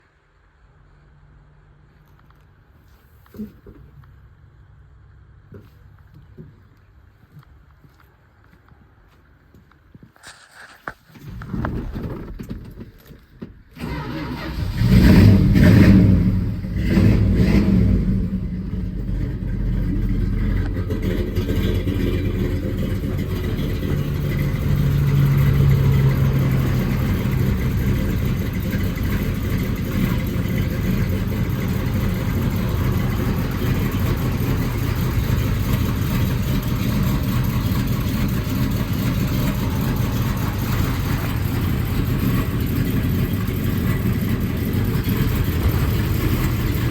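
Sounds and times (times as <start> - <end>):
car engine idling: 13.8 - 46.9
car engine starting and revving: 13.8 - 46.9.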